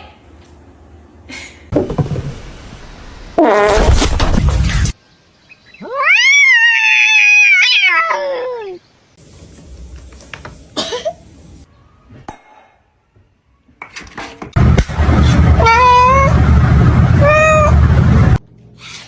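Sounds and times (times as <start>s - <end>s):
cat yowling meow: 5.8s - 8.8s, 17.2s - 17.7s.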